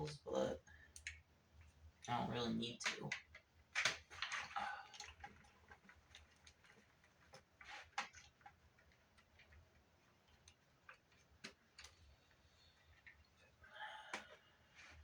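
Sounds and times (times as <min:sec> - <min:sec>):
clicks and taps of small parts: 0:02.8 - 0:07.4.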